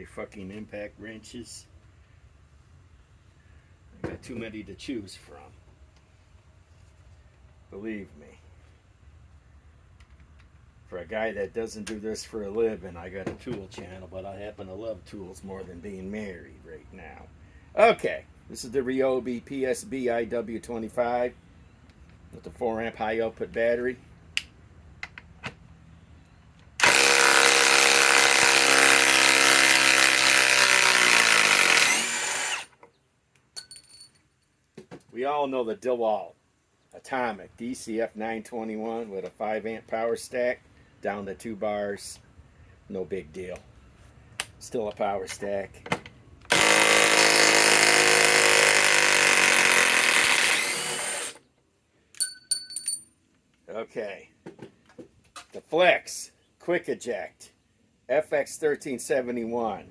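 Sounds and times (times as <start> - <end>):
metallic clink: 33.6 - 34.3, 52.2 - 53.2
impact wrench hammering: 52.2 - 53.1.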